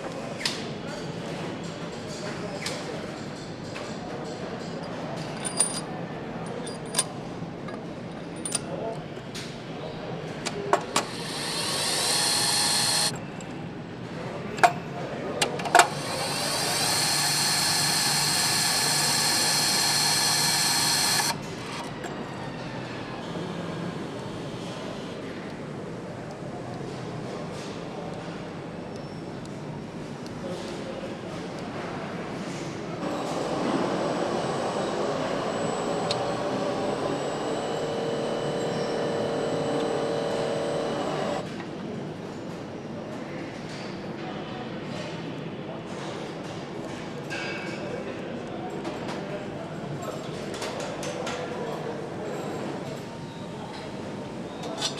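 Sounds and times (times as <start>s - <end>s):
machinery noise: 10.4s - 13.2s, 15.4s - 22.9s, 33.0s - 41.4s
power tool whining: 10.8s - 13.1s, 15.7s - 21.9s, 33.0s - 41.4s
steady hum: 10.8s - 13.2s, 15.6s - 21.9s.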